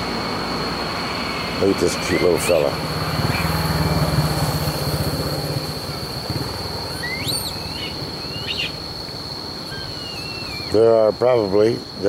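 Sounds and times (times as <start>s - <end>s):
low engine rumble: 0.0s - 9.0s
insect drone: 0.0s - 12.0s
rising bird calls: 1.0s - 11.1s.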